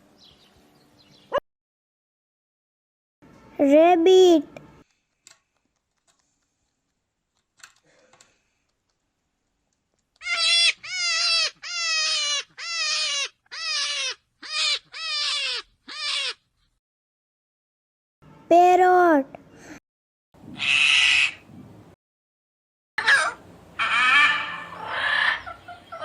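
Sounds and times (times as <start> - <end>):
rabbit squealing: 10.2 - 16.5, 20.6 - 21.4, 23.0 - 26.0.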